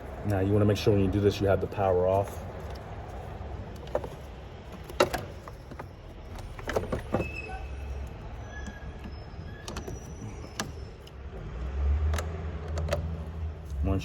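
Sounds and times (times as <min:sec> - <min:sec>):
cable clamps clicking and clattering: 0:02.2 - 0:11.2.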